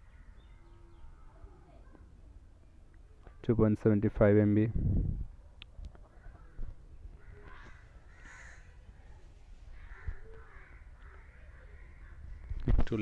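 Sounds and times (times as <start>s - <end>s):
faint crows cawing: 0.0s - 1.9s, 5.9s - 13.0s.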